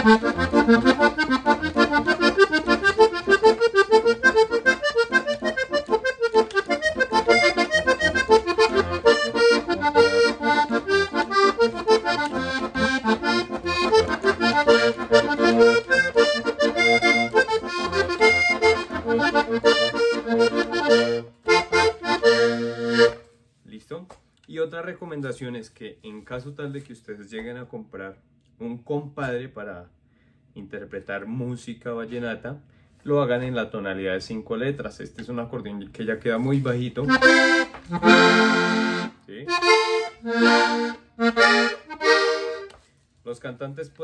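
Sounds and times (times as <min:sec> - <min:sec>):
button accordion playing runs: 0:00.0 - 0:23.2, 0:37.1 - 0:42.7.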